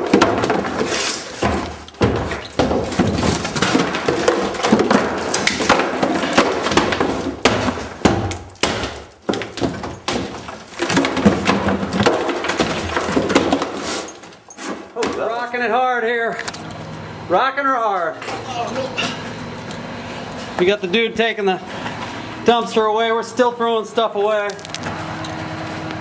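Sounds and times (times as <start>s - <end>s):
wood cracking and splintering: 0.0s - 15.4s, 24.2s - 25.0s.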